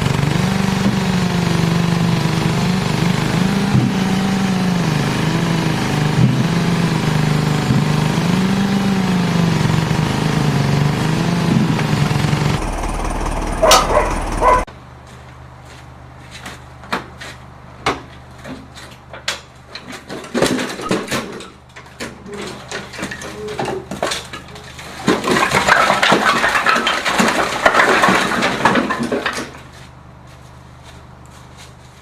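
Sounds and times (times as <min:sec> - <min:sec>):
low machine hum: 0:00.0 - 0:16.2
hard objects knocking and clattering: 0:19.2 - 0:29.6.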